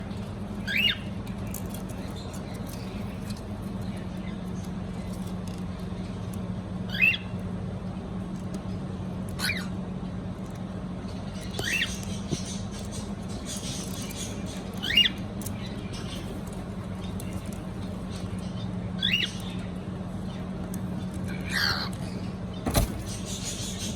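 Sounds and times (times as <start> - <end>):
steady low hum: 0.0 - 23.9
cockatiel chirping: 0.6 - 1.1, 11.5 - 15.2, 19.0 - 19.4, 21.4 - 21.9.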